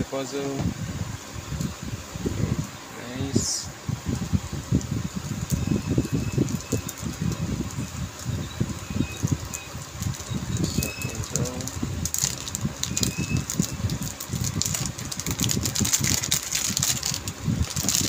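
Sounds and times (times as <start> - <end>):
packaging rustling: 9.2 - 18.0.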